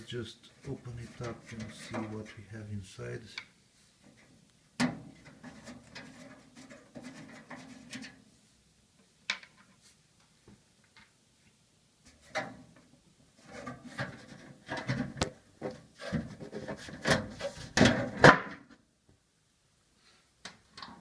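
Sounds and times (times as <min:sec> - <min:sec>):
metal panel rubbing and scraping: 0:00.8 - 0:02.3, 0:05.0 - 0:08.2, 0:13.4 - 0:18.2.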